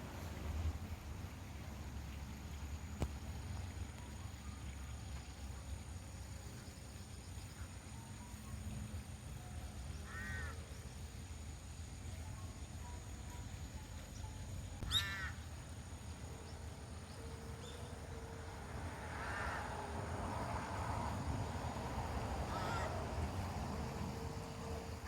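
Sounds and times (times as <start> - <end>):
crow cawing: 10.1 - 10.6, 14.9 - 15.4, 19.2 - 19.6, 22.5 - 23.0.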